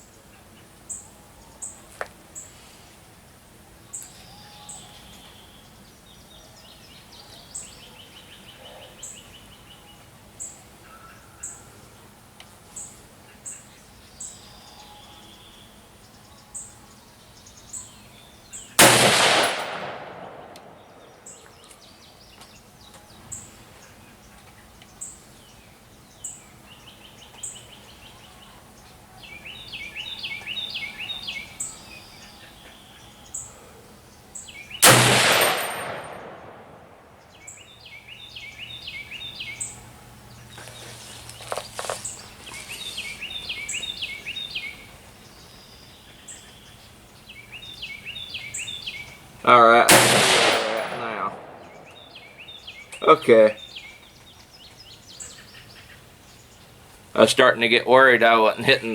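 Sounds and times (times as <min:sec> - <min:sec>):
birds singing: 0:00.0 - 0:58.9
rifle shot echoing: 0:18.8 - 0:21.4, 0:34.8 - 0:37.3, 0:49.8 - 0:52.4.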